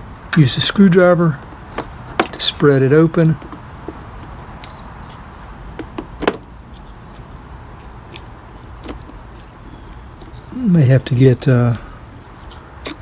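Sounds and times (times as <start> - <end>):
low background hiss: 0.0 - 13.0.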